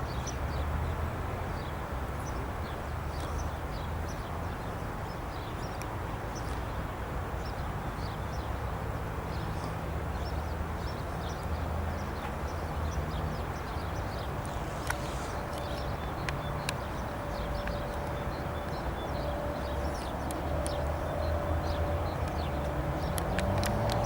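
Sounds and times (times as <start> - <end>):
small birds chirping: 9.3 - 24.0.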